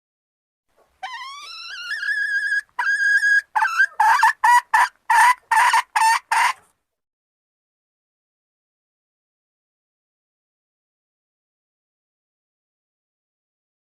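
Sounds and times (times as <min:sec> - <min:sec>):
hen calling and clucking: 0:00.8 - 0:06.7.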